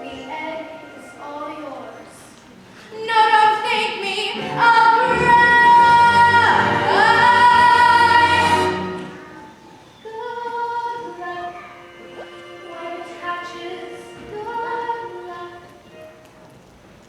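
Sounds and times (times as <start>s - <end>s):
musical accompaniment: 0.0s - 1.9s, 4.3s - 9.9s, 11.1s - 16.5s
woman singing with vibrato: 2.9s - 15.9s.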